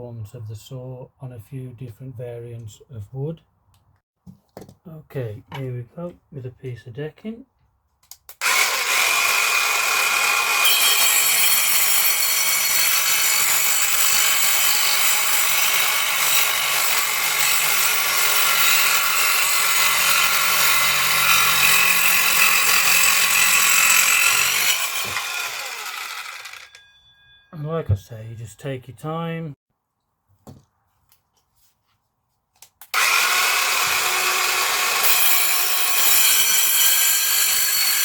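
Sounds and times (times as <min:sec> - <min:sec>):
circular saw cutting wood: 0:08.4 - 0:26.9, 0:32.9 - 0:38.0.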